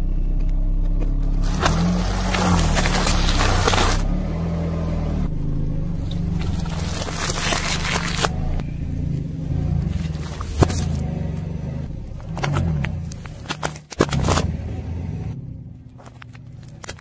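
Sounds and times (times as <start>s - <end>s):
car engine humming: 0.0s - 17.0s
tyre crushing objects: 1.0s - 4.1s, 6.2s - 8.4s, 9.8s - 11.1s, 12.1s - 14.6s, 15.9s - 17.0s.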